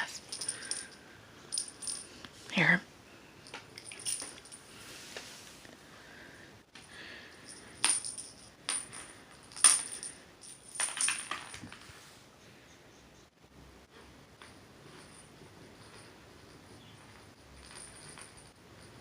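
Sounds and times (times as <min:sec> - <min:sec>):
toy jingling with metallic ring: 0:00.1 - 0:02.1, 0:03.8 - 0:04.6, 0:07.4 - 0:11.4, 0:14.9 - 0:19.0.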